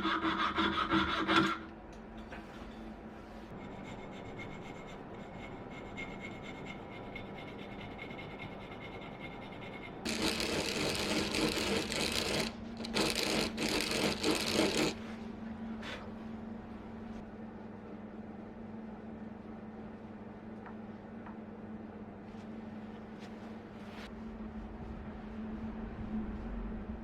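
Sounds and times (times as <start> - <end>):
hand tool scraping wood: 10.1 - 15.0.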